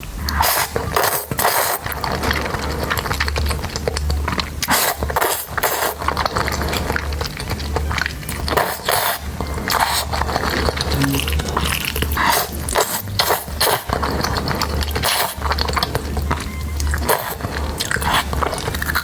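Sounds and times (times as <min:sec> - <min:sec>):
eating clicks and crackles: 0:00.0 - 0:19.0
low hum: 0:10.7 - 0:11.9.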